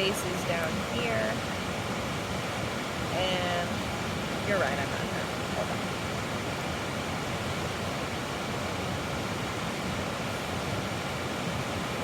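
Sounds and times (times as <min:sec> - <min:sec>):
creek water rushing: 0:00.0 - 0:12.0.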